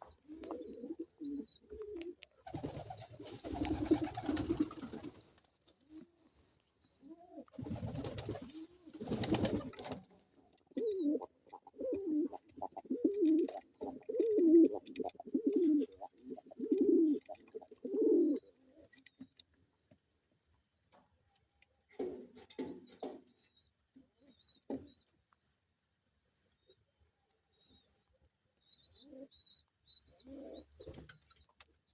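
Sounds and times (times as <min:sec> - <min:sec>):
pigeon cooing: 0:00.0 - 0:05.3, 0:07.0 - 0:09.9, 0:10.7 - 0:18.9, 0:30.1 - 0:31.0.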